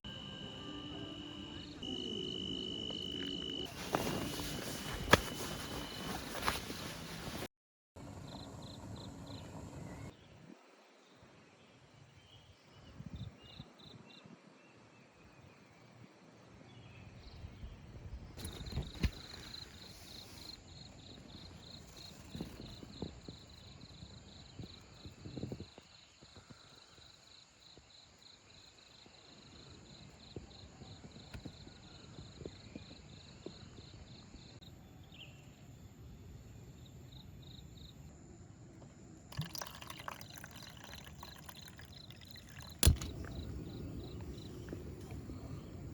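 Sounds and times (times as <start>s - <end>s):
low rustling: 3.7s - 7.5s
insects trilling: 39.4s - 45.8s.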